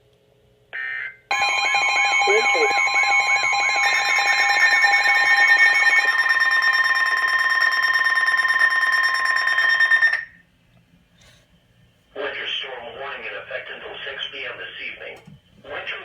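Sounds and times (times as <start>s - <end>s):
steady electronic alert tones: 1.3s - 10.2s.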